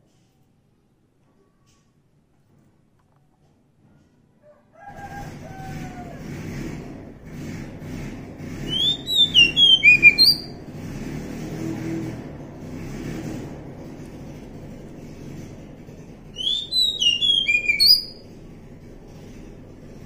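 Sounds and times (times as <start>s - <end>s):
bird singing whistled notes: 8.7s - 10.6s, 16.3s - 18.2s.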